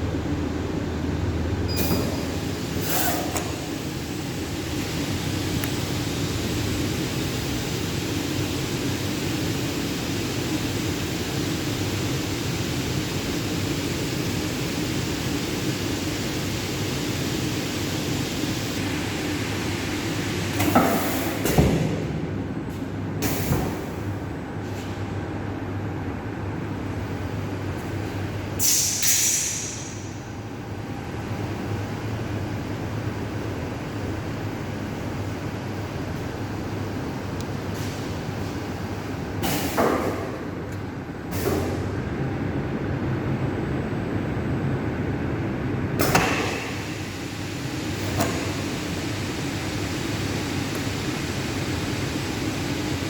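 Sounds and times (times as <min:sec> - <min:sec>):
short hissing bursts: 0:28.6 - 0:30.0.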